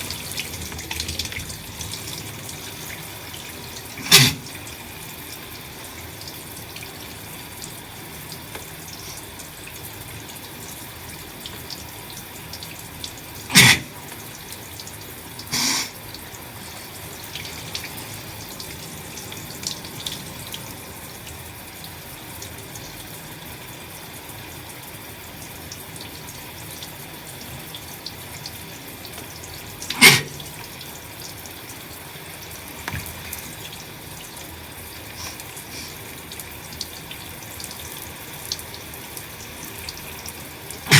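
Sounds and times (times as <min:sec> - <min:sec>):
shower running: 0:00.0 - 0:40.9
person sneezing: 0:04.0 - 0:04.4, 0:13.5 - 0:13.9, 0:15.5 - 0:16.0, 0:29.9 - 0:30.4
burst of breath: 0:15.5 - 0:16.0
faint sniffs: 0:15.5 - 0:16.0, 0:29.9 - 0:30.3, 0:35.2 - 0:36.0.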